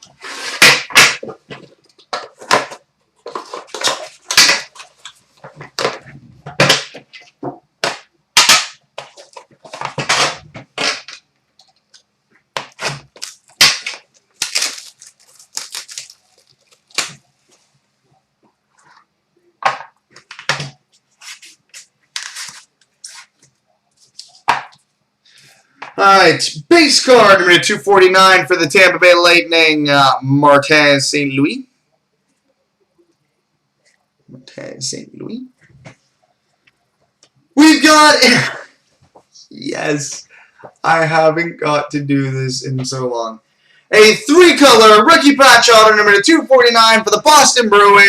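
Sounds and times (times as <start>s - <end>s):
packaging being torn open: 12.8s - 17.2s.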